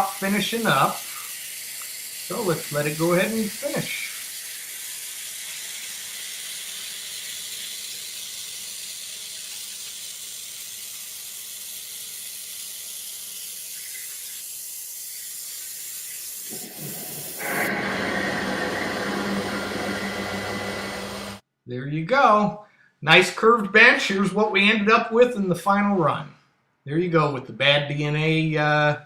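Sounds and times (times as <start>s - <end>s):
water jet cutter hissing: 0.0s - 21.4s
harsh rushing with low hum: 16.6s - 21.4s.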